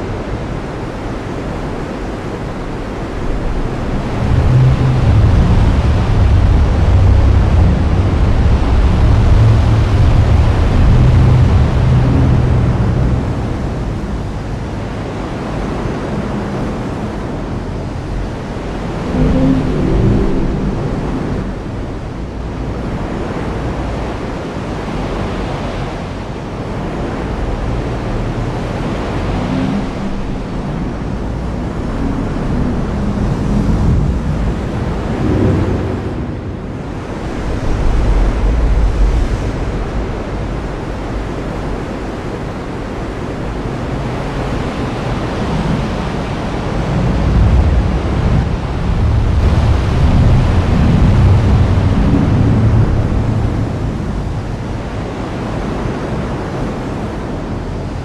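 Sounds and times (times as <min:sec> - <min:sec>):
low thunder rumbles: 0:03.1 - 0:14.7, 0:15.3 - 0:23.2, 0:29.1 - 0:41.7, 0:46.4 - 0:55.1.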